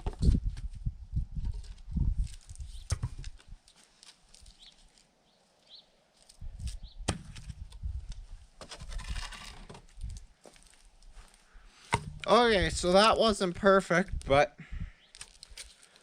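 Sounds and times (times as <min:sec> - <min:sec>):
wood tearing and crackling: 0:06.2 - 0:10.8, 0:15.0 - 0:16.0
wood cracking: 0:07.1 - 0:10.8, 0:15.0 - 0:16.0.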